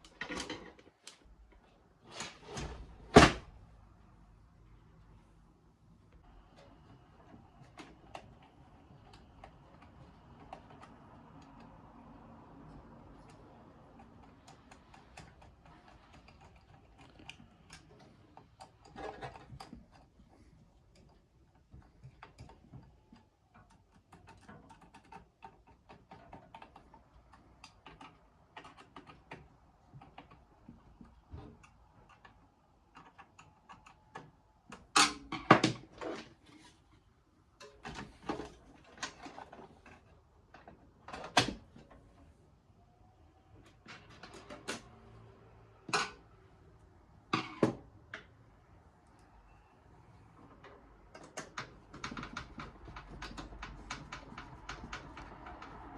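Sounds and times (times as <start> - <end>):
computer parts clicking and tapping: 6.2 - 36.2, 49.0 - 55.9.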